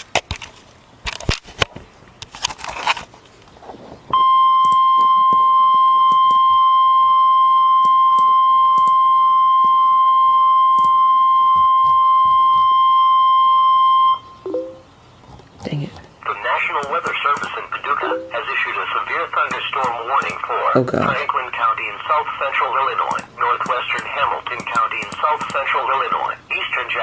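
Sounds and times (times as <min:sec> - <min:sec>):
crackling noise and clicks: 0:00.0 - 0:05.5, 0:15.3 - 0:26.7
steady warning alarm tone: 0:04.1 - 0:14.9, 0:17.0 - 0:18.6.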